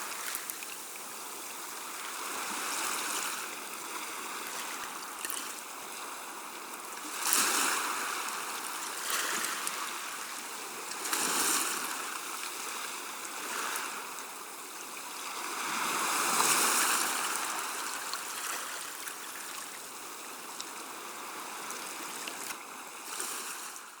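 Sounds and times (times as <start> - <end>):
sea waves washing onto shore: 0.0 - 24.0.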